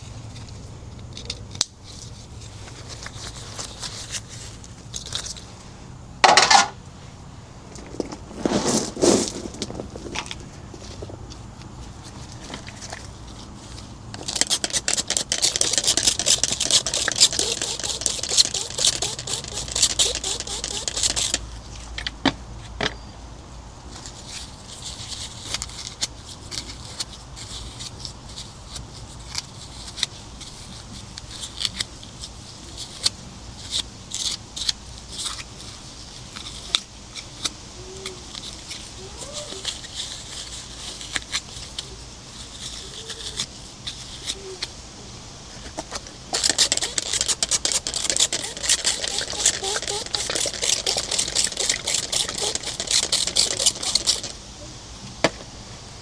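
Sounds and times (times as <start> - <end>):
scratchy scraping: 7.9 - 11.0, 11.9 - 21.5, 45.7 - 54.4.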